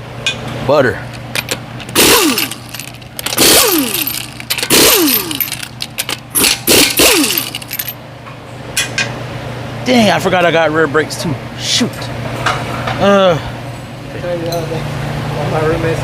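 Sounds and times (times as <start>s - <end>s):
impact wrench bursts: 1.2s - 8.0s.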